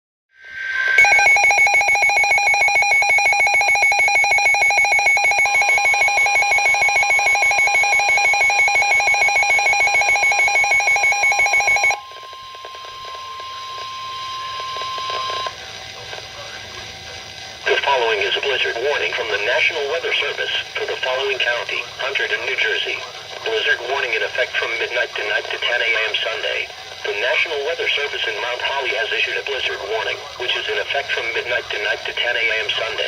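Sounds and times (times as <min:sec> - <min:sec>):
steady warning alarm tone: 0:00.4 - 0:15.6
rapid pulsing beep: 0:00.5 - 0:15.5.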